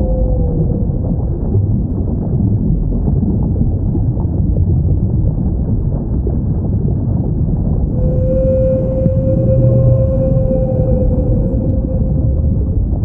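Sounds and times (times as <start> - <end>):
whale call: 0.0 - 1.9, 7.9 - 13.0
low underwater rumble: 0.0 - 13.0.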